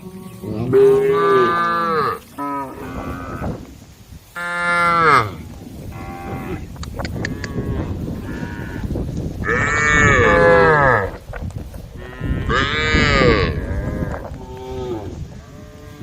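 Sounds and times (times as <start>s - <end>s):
cow mooing: 0.0s - 3.6s, 4.4s - 6.6s, 9.4s - 11.1s, 12.0s - 16.0s
faint moos of other cows: 12.0s - 16.0s.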